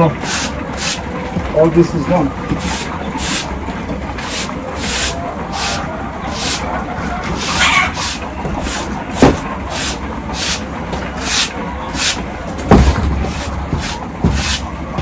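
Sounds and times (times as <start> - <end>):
broom sweeping floor: 0.1 - 15.0
sharp knocks: 7.2 - 15.0.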